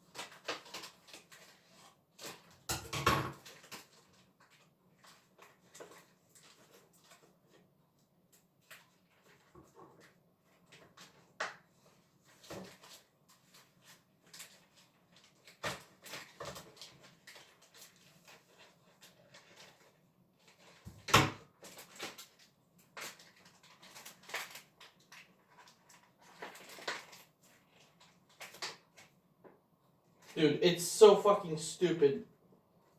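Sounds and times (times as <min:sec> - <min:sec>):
plastic packaging crinkling: 0:00.0 - 0:02.5, 0:12.3 - 0:20.8, 0:21.5 - 0:29.2.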